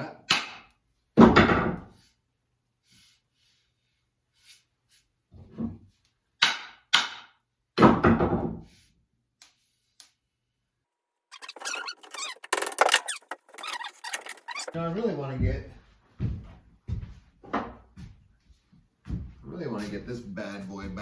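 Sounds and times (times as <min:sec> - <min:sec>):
axe head struck with wooden knocks: 0:06.4 - 0:08.2.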